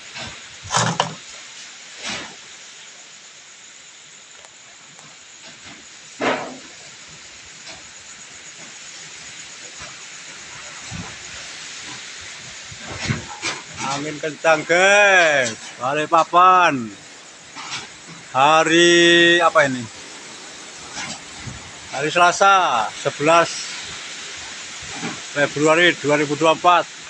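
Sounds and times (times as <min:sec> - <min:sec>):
strong storm wind: 0:09.4 - 0:26.1.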